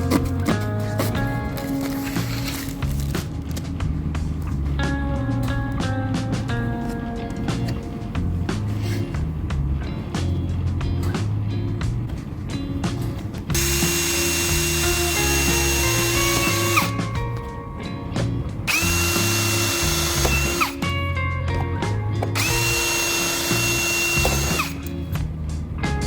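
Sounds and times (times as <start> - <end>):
background music with bass: 0.0 - 26.0
power drill whining: 13.5 - 17.0, 18.7 - 20.8, 22.4 - 24.9.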